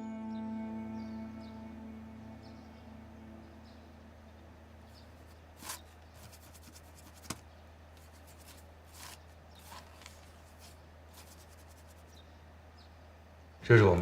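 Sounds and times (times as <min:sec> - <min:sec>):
low steady hum: 0:00.0 - 0:14.0
handling rustles and clicks: 0:08.0 - 0:11.4.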